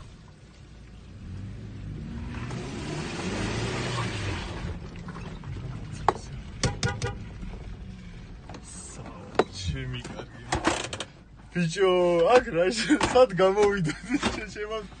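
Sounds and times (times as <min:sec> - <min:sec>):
diesel engine under load: 0:00.0 - 0:15.0
sharp knocks: 0:06.6 - 0:07.2.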